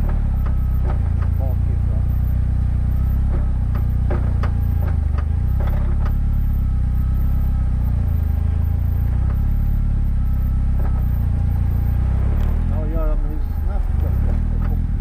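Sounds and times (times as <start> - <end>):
car engine drone: 0.0 - 15.0
sharp irregular knocks: 3.2 - 6.2.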